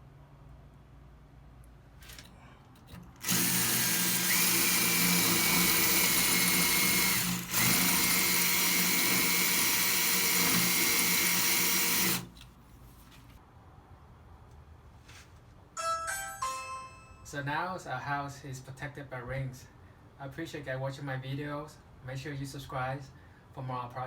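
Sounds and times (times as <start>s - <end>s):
power drill motor whine: 3.2s - 12.3s.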